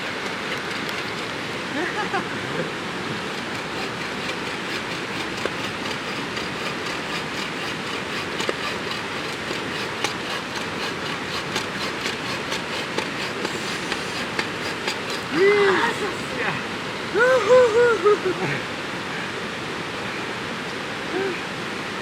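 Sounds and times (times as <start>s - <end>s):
fire hiss: 13.5s - 14.4s.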